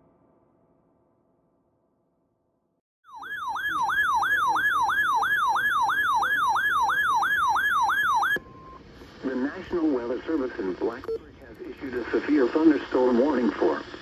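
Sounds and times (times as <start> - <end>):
warbling electronic alert tone: 3.1 - 8.4.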